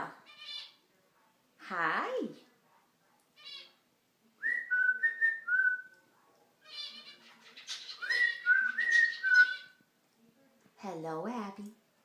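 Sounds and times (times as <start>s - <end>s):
cockatiel chatter: 0.2s - 0.9s, 3.3s - 3.8s, 6.6s - 9.8s
cockatiel whistling: 7.9s - 9.7s.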